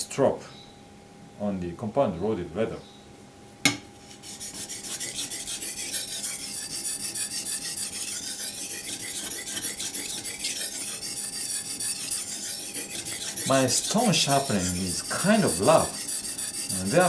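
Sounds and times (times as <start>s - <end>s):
knife scraping on sharpening stone: 4.1s - 17.0s.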